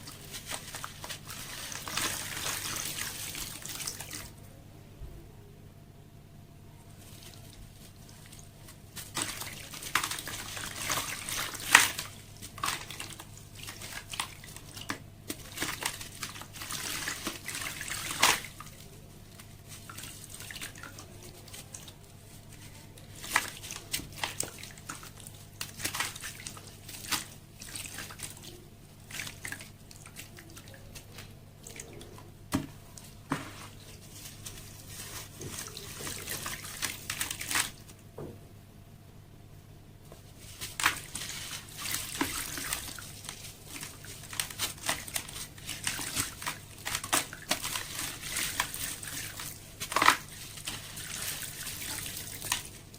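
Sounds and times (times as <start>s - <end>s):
wet crackling and dripping: 7.0s - 38.0s, 40.1s - 52.9s.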